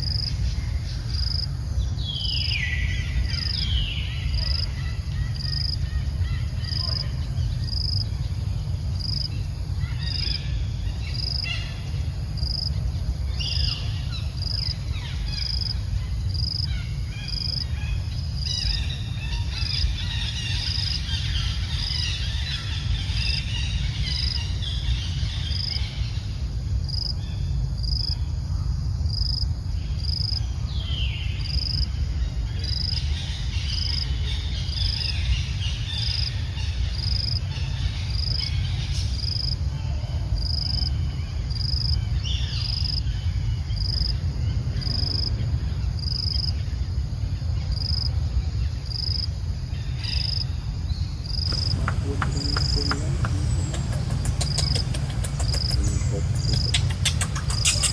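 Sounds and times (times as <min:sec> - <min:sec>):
scattered bird and insect calls: 0:00.0 - 0:57.9
steady low rumble: 0:50.6 - 0:57.9.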